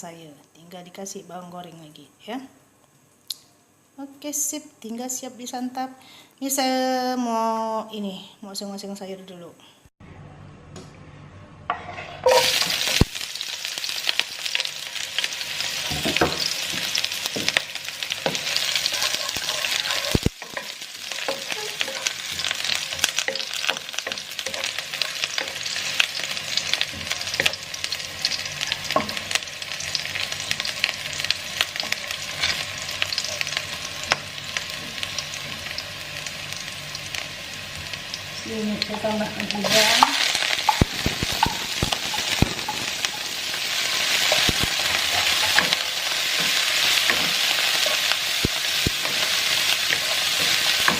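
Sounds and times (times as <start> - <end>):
spatula scraping pan: 11.7 - 13.0, 15.8 - 26.0
vegetables sizzling in oil: 11.7 - 50.9.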